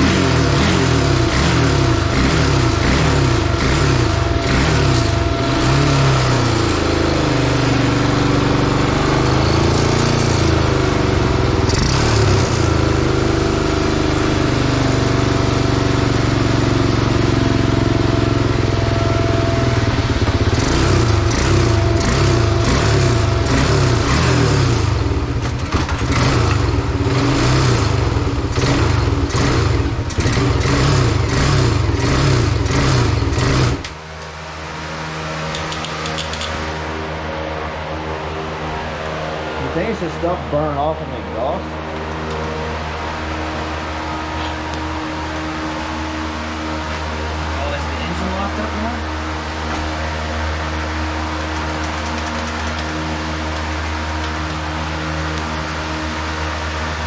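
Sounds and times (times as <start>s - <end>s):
atv engine revving: 0.0s - 57.0s.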